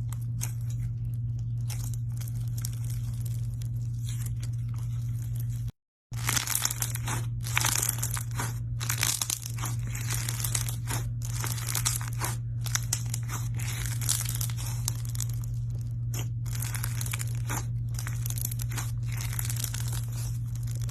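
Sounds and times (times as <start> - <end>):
slime crackling and tearing: 0.0 - 20.9
steady low hum: 0.0 - 20.9.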